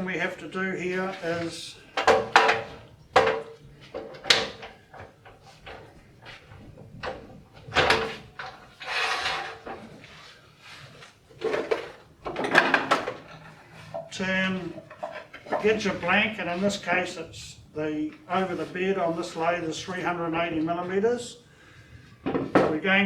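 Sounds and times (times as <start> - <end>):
objects sliding and scraping: 0.8 - 17.0
objects knocking on bench: 1.9 - 10.0, 11.4 - 16.0, 22.2 - 22.8.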